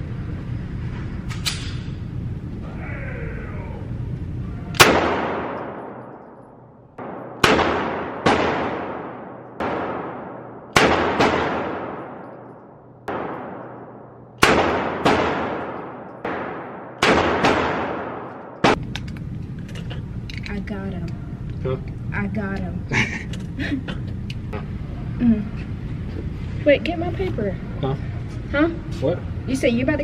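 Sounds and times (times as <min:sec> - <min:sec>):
gunshots with echo: 0:04.8 - 0:06.3, 0:07.0 - 0:18.8.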